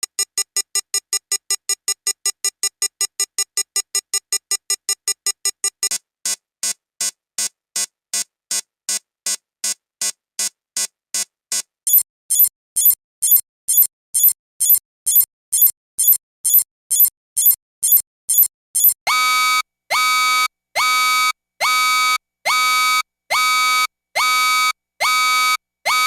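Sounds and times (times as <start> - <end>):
electronic alarm beeping: 0.1 - 5.9, 11.9 - 19.6
high-pitched beeping: 11.9 - 19.0.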